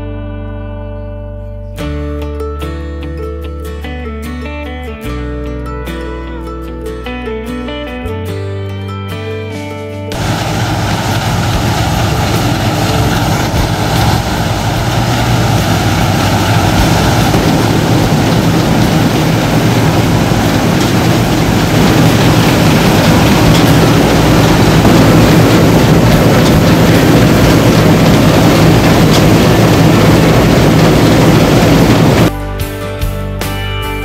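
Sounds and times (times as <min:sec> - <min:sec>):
heavy machinery engine running: 0:10.1 - 0:32.3.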